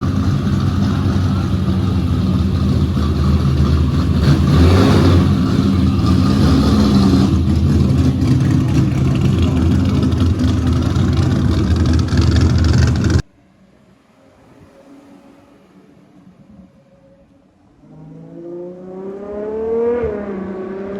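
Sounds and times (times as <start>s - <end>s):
sports car engine running: 0.0s - 13.2s.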